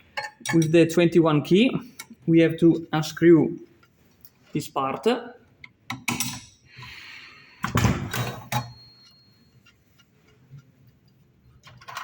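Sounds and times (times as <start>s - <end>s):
spanner clinking on metal: 5.9s - 6.6s, 8.1s - 9.5s.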